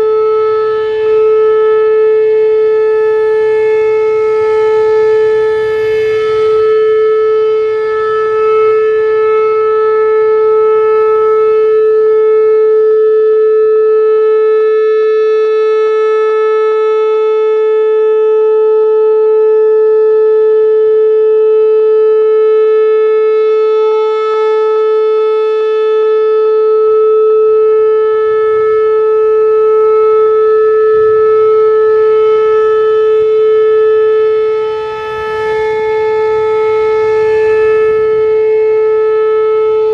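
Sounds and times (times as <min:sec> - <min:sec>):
electronic siren steady tone: 0:00.0 - 0:39.9.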